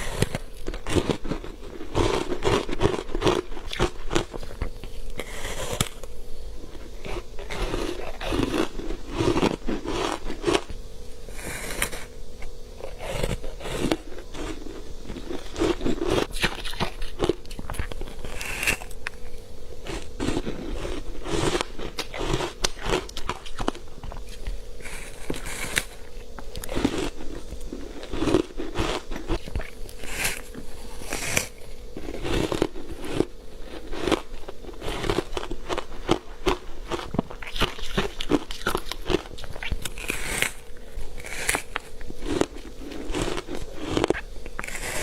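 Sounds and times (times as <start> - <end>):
chewing: 12.8 - 40.6, 41.2 - 45.0.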